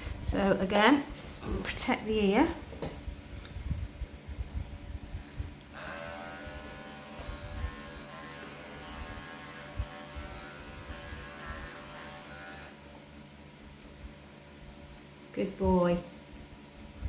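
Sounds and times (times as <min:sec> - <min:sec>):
electric pet clippers buzzing: 0:05.6 - 0:13.0.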